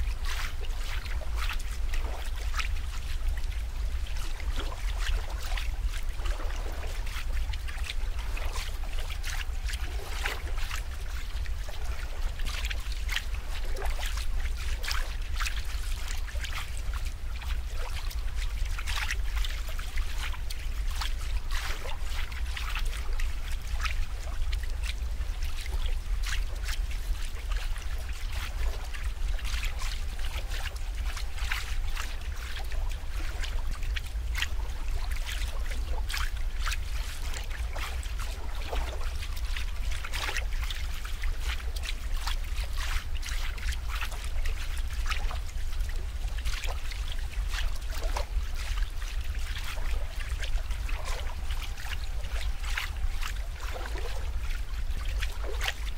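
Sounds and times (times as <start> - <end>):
steady low rumble: 0.0 - 55.9
water trickling and splashing: 0.0 - 55.9.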